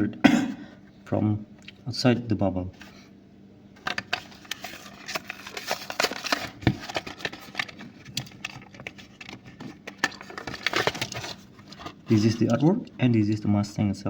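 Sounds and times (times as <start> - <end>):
plastic packaging crackling: 3.8 - 13.0.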